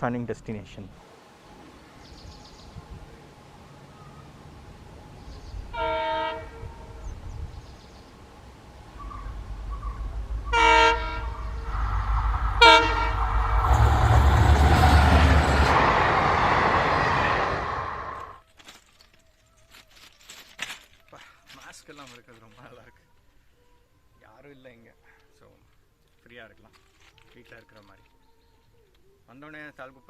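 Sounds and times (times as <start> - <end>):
train rumble and wheel noise: 1.5 - 18.4
locomotive horn: 5.6 - 7.2, 8.4 - 18.4.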